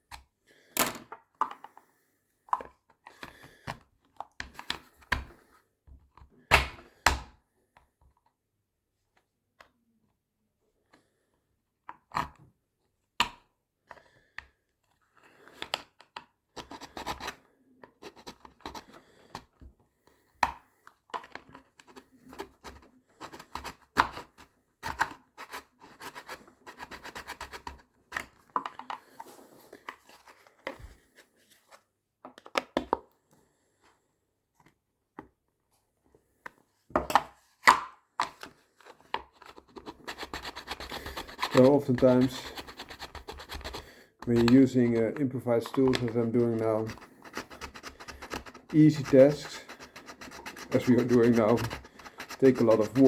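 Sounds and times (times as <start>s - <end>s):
tools rasping hard plastic: 38.9s - 53.0s.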